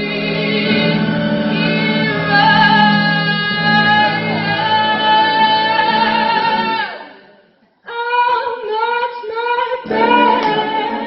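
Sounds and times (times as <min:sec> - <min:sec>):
instrumental backing track: 0:09.9 - 0:11.0.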